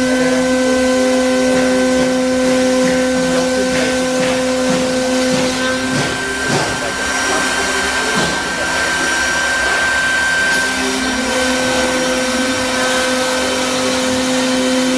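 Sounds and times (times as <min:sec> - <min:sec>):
low hum: 0:00.0 - 0:14.9
router spindle air rush and whine: 0:00.0 - 0:14.9.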